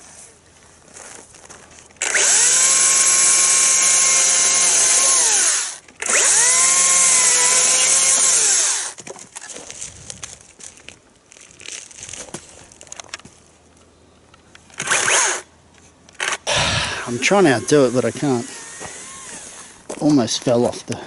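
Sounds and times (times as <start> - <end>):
battery chainsaw whining: 2.0 - 9.0, 14.8 - 15.4, 16.2 - 19.8.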